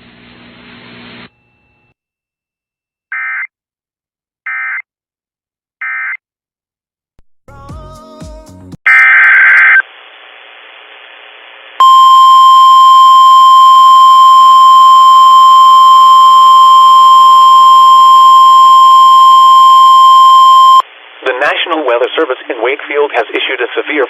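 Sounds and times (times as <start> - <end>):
steady warning alarm tone: 11.8 - 20.8.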